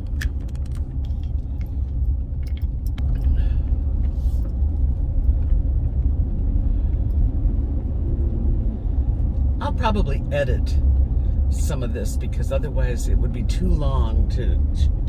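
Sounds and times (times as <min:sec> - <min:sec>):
light clicks and rattles: 0:00.0 - 0:06.2
car driving rumble: 0:00.0 - 0:15.0.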